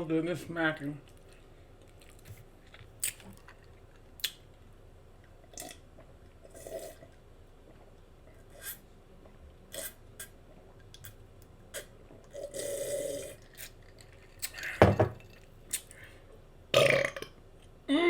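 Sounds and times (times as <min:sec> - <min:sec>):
wet mouth sounds of eating: 0:11.0 - 0:16.0.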